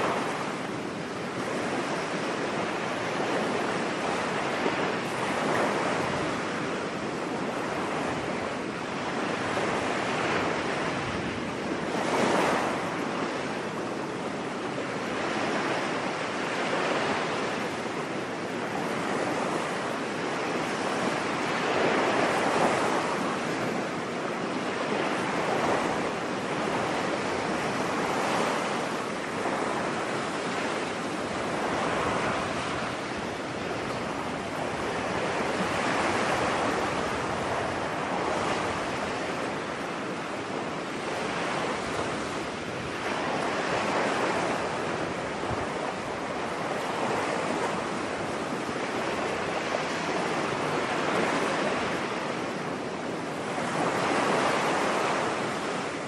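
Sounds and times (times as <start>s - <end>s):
ocean waves breaking on beach: 0.0s - 56.0s.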